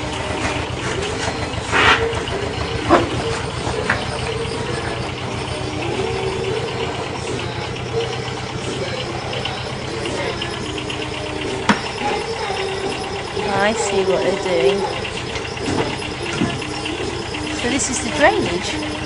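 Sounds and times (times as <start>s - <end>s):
excavator engine running: 0.0s - 19.0s.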